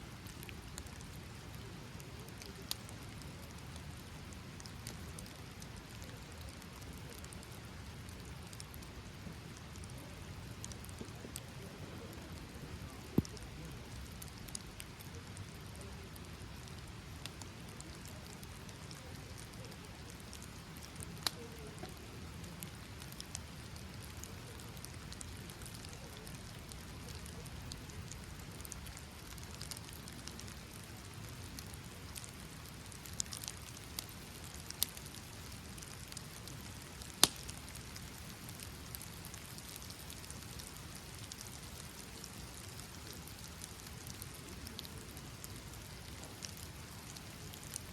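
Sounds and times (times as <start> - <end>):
steady rain hiss: 0.0 - 47.9.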